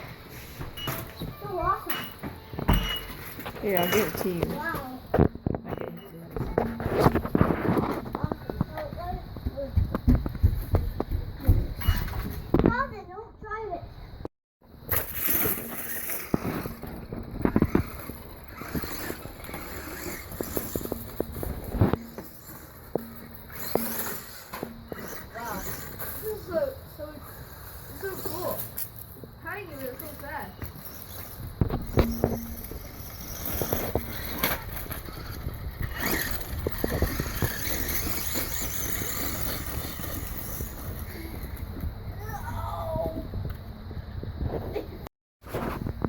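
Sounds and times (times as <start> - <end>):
toy truck bumping and rattling: 0.7 - 9.0, 14.9 - 26.4, 30.9 - 41.4
electric motor whining: 30.9 - 41.6.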